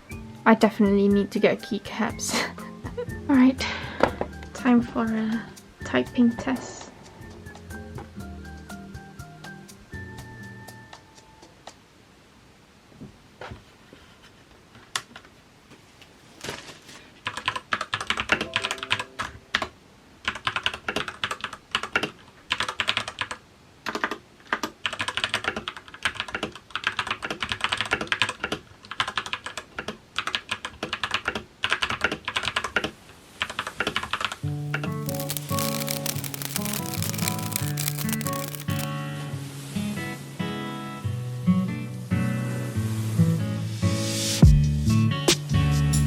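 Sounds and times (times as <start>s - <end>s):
mechanical keyboard typing: 17.2s - 19.1s, 20.2s - 32.7s, 34.2s - 38.9s.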